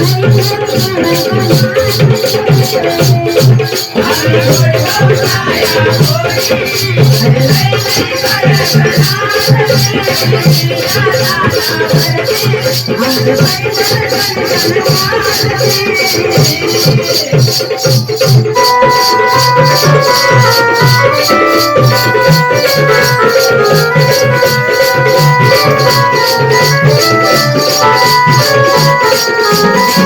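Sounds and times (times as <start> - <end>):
drum beats: 0.0 - 30.0
fast rattling rhythm: 0.0 - 30.0
melody of held notes: 18.6 - 30.0.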